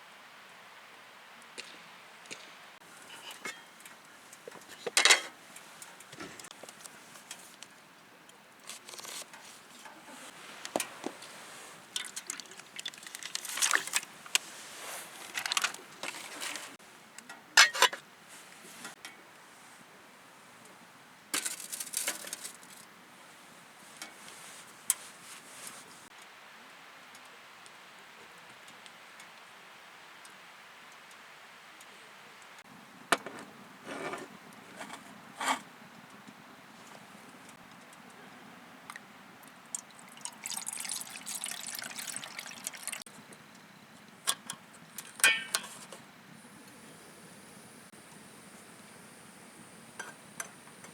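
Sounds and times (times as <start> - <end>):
water being poured: 11.9 - 14.1, 39.7 - 43.0.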